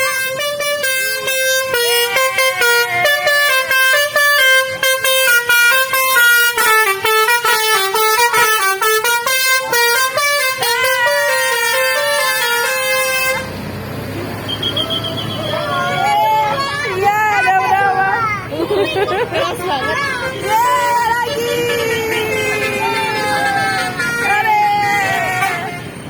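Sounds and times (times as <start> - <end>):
multi-tone bus horn tune: 0.0 - 18.2, 18.9 - 26.0.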